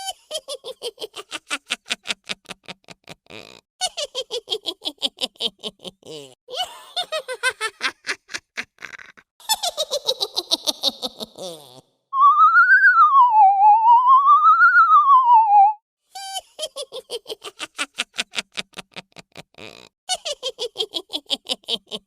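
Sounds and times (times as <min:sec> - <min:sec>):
high rapid cackling laugh: 0:00.0 - 0:11.8.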